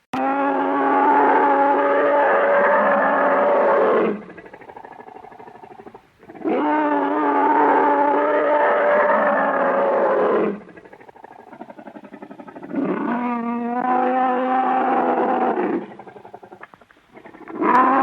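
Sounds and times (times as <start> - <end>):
monster roar: 0.2 - 4.3.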